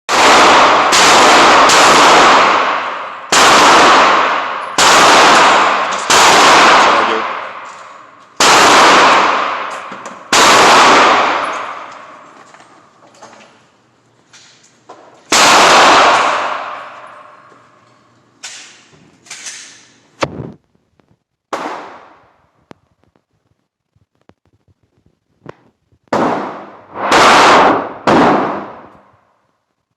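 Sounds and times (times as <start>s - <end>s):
loud gunshots ringing: 0.1s - 12.2s, 15.3s - 17.4s, 21.5s - 22.2s, 26.1s - 29.0s.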